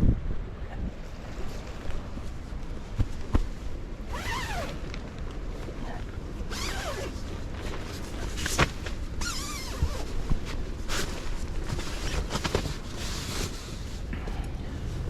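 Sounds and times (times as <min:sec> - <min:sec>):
rasping zipper pulls: 0:04.1 - 0:04.8, 0:06.5 - 0:07.2, 0:09.2 - 0:10.1.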